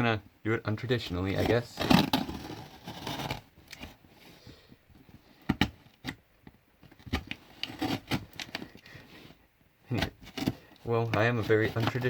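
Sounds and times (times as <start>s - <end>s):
wrapping scraping and rubbing: 1.3s - 3.6s, 10.2s - 12.0s.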